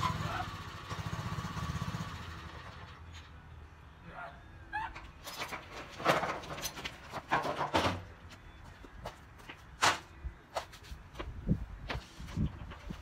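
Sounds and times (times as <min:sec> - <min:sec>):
sharp clattering knocks and scrapes: 0:05.0 - 0:08.3.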